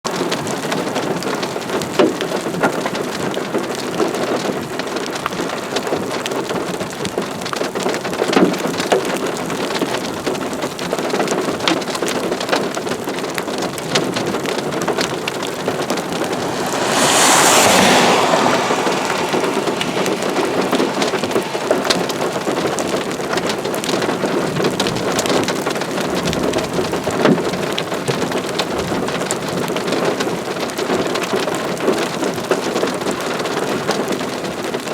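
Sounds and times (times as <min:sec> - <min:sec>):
steady rain: 0:15.4 - 0:26.5
rushing sound: 0:15.6 - 0:23.2.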